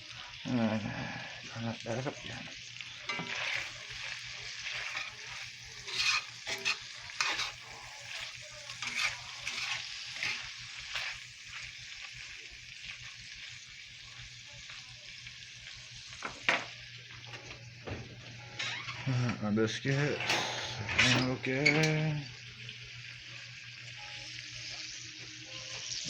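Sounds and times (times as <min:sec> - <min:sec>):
bacon sizzling in a frying pan: 0:00.0 - 0:26.0
grease popping: 0:15.8 - 0:22.7.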